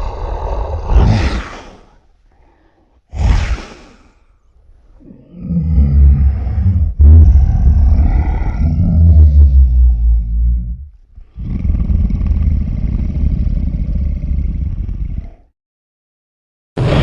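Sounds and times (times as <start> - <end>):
rough low rumbling: 5.2 - 14.9.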